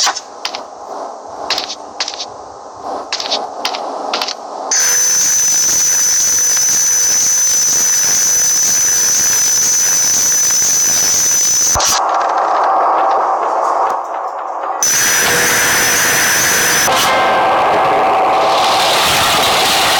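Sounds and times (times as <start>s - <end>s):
machine whir with high whine: 4.7s - 12.2s, 14.8s - 19.9s.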